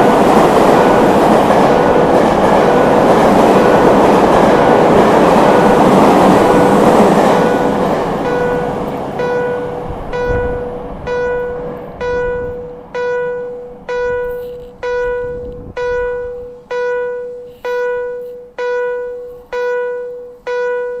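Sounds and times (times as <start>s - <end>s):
low rumble of passing train: 0.0s - 21.0s
bell-like warning chime: 5.6s - 21.0s.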